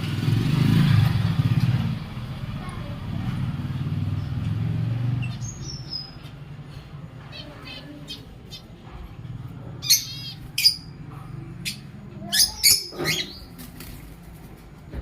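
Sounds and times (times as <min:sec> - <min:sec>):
lovebirds chirping and squawking: 0:04.1 - 0:14.1.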